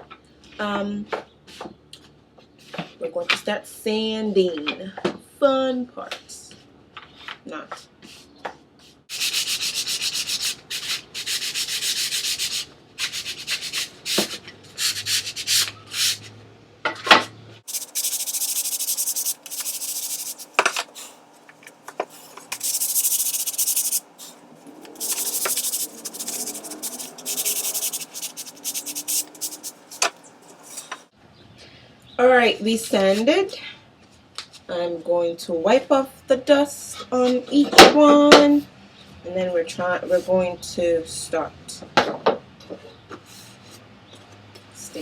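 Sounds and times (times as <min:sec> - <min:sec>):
sandpaper rubbing on wood: 0:09.1 - 0:16.2, 0:17.7 - 0:21.1, 0:22.1 - 0:31.0.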